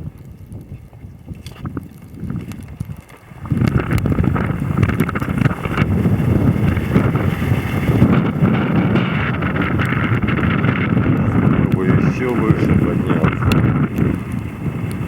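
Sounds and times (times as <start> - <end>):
wind buffeting microphone: 0.0 - 15.0
small clicks: 0.1 - 4.1.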